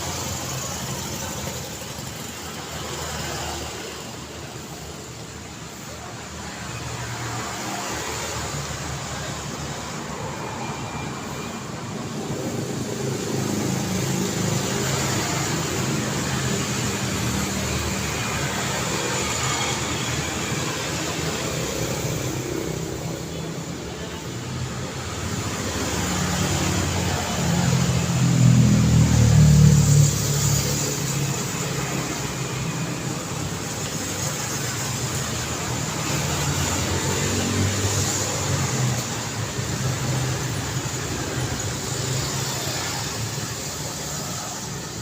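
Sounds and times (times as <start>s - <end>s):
cars passing by: 0.0s - 45.0s
rumble of engines and tyres: 0.0s - 45.0s.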